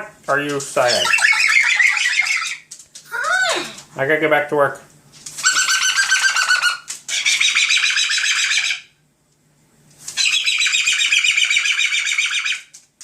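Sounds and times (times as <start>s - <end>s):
cockatoo screeching: 0.9s - 3.8s, 5.4s - 8.9s, 10.2s - 12.7s.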